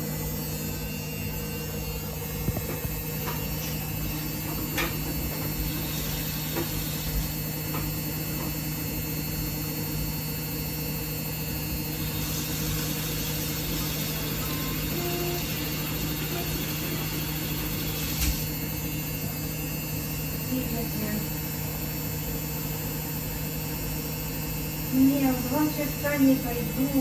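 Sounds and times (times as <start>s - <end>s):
washing machine motor hum: 0.0s - 27.0s.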